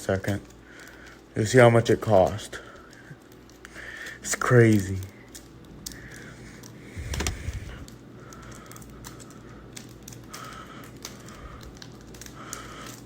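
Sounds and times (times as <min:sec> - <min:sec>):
card packs being handled: 0:02.9 - 0:13.0.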